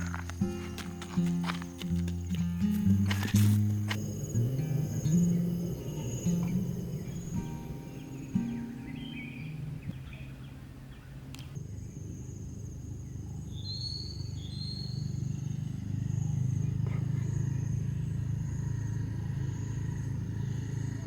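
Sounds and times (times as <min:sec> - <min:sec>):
low rumble: 0:02.9 - 0:12.8.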